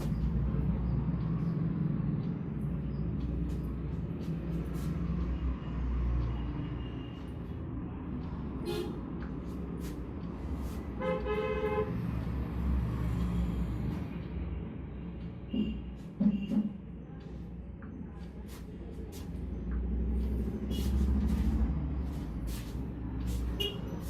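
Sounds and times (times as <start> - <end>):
road traffic rumble: 0.0 - 24.0
vehicle horn honking: 11.0 - 11.9, 23.6 - 23.9.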